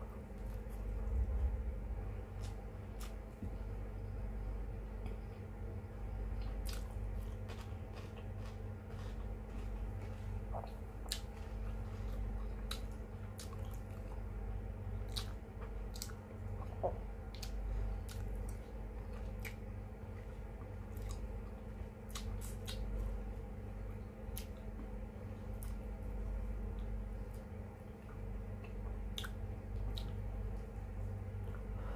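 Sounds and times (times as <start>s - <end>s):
low hum: 0.0s - 31.9s
wet chewing and lip smacks: 6.4s - 14.2s, 15.0s - 19.8s, 20.6s - 23.0s, 25.5s - 25.8s, 28.1s - 30.3s.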